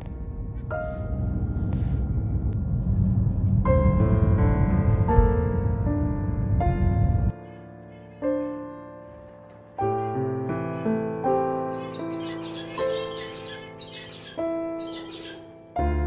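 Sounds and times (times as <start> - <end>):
low rumble: 0.0 - 7.3
slow piano music: 0.0 - 16.0.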